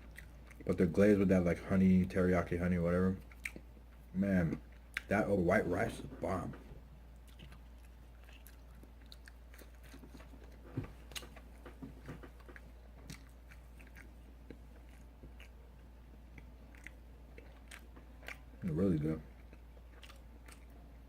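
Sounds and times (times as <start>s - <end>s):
chewing crunchy food: 0.0s - 1.0s, 3.1s - 5.1s, 7.2s - 21.0s.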